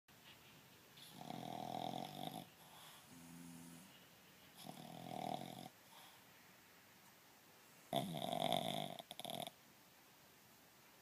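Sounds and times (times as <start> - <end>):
loud rough snores: 1.1 - 2.5, 4.6 - 5.7, 7.9 - 9.5
soft breath: 2.5 - 4.6, 5.8 - 6.7.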